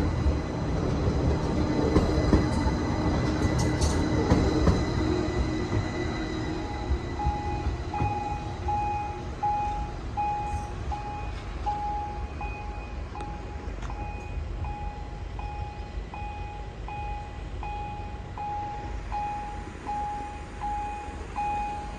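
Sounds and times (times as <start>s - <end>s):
crossing signal electronic beeps: 5.9s - 21.9s.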